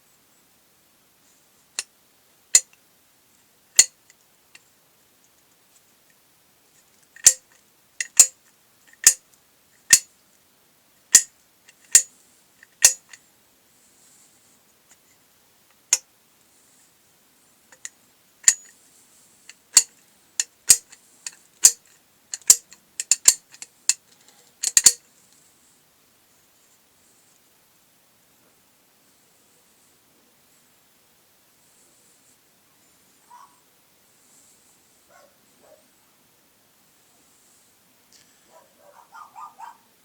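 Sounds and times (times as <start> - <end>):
sharp metallic ratchet clicks: 7.2 - 8.3, 8.9 - 9.2, 9.8 - 10.0, 11.1 - 13.2, 17.8 - 18.7, 19.5 - 24.0, 24.6 - 25.0.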